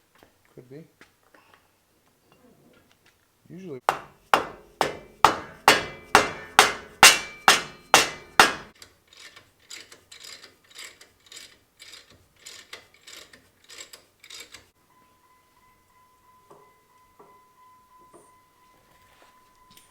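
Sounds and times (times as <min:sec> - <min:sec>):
hammer striking steel: 0:03.9 - 0:08.7.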